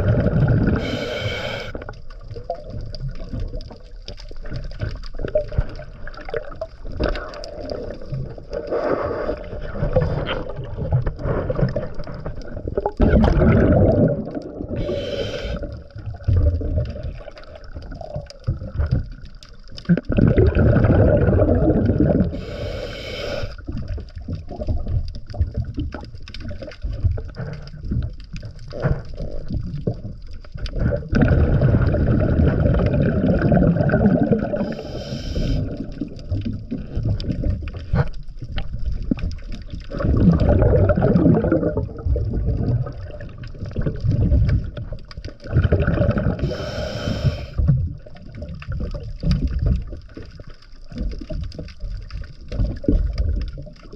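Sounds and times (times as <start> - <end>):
exhaled air bubbling underwater: 0.0 - 53.9
regulator hiss on inhale: 0.8 - 2.0, 8.6 - 10.3, 14.7 - 15.8, 22.3 - 23.6, 34.5 - 35.8, 46.4 - 47.7.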